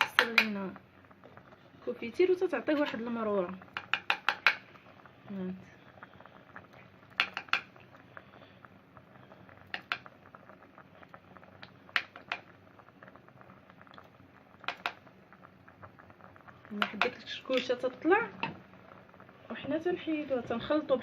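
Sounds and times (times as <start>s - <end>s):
jam bubbling pops: 0.0s - 20.8s.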